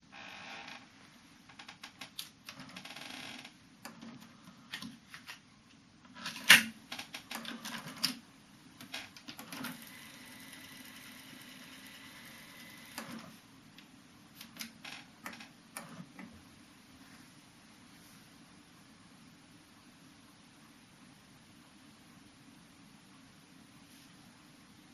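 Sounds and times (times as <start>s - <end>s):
cassette deck whir: 8.8s - 16.4s.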